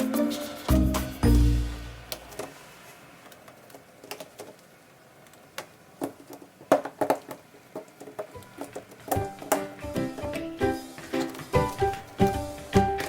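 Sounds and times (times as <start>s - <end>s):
background music: 0.0s - 2.2s, 9.2s - 13.0s.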